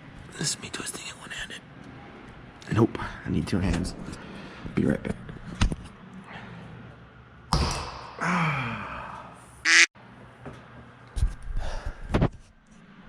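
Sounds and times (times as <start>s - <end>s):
strained grunts of effort: 8.2s - 9.4s.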